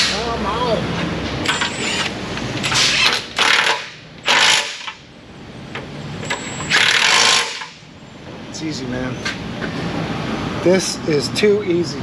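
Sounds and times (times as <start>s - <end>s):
power tool bursts: 1.5s - 5.0s, 6.3s - 7.8s.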